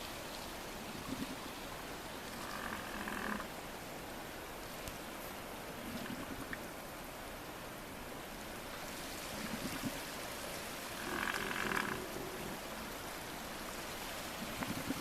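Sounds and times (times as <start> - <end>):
wind: 0.0 - 15.0
elephant seals calling: 11.0 - 12.6.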